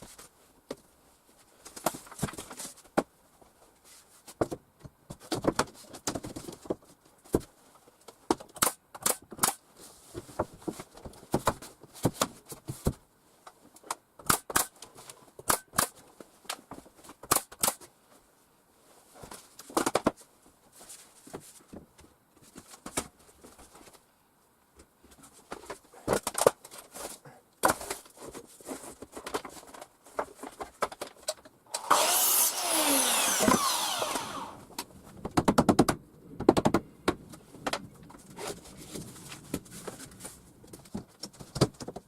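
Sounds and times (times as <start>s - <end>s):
sharp knocks on wooden boards: 35.2s - 37.2s.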